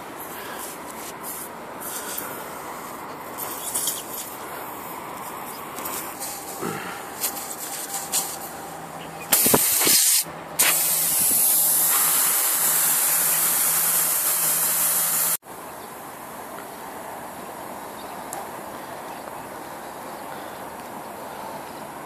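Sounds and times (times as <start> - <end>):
air hissing from tyre: 0.0 - 15.4.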